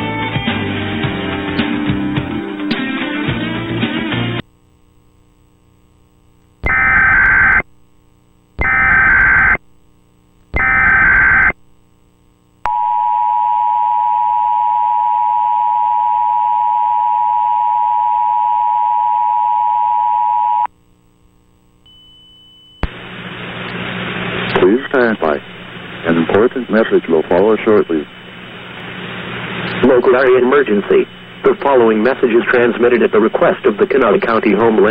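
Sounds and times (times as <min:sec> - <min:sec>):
digital data bursts: 0:06.6 - 0:07.6, 0:08.6 - 0:09.6, 0:10.6 - 0:11.6.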